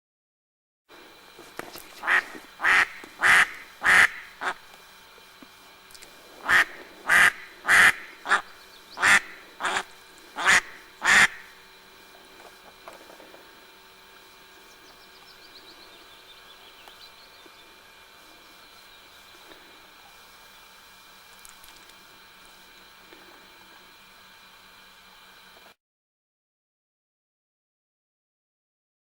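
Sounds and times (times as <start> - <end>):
duck quacking: 2.0 - 4.6, 6.4 - 11.6.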